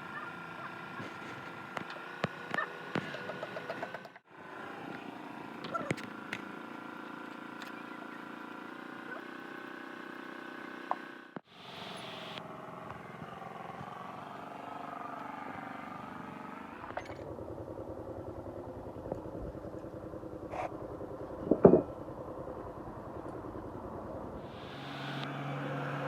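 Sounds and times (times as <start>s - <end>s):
engine running: 0.0s - 26.0s.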